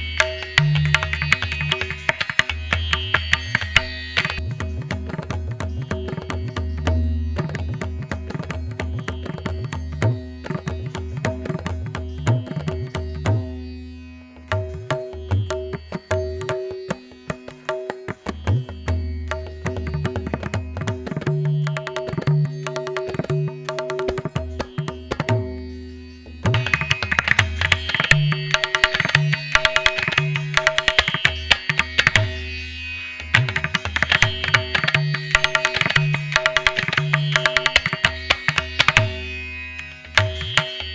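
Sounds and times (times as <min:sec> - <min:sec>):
bright busy upper music layer: 0:03.2 - 0:33.8.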